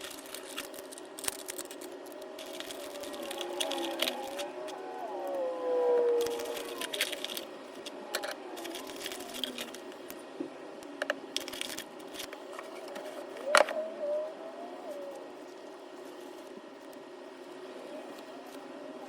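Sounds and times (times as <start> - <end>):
wavering pitched tone: 2.2 - 9.9, 12.7 - 15.7.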